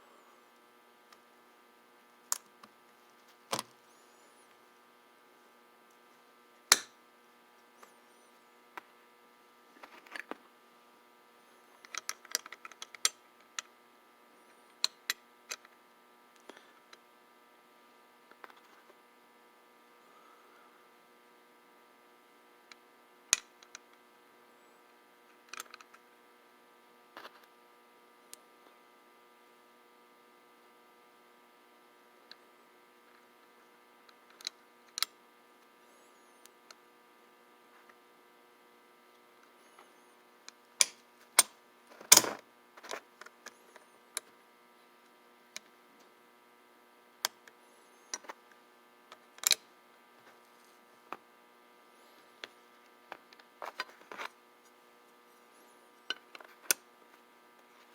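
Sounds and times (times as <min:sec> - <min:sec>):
electrical hum: 0:00.0 - 0:57.9
small metal parts clicking: 0:49.4 - 0:49.6.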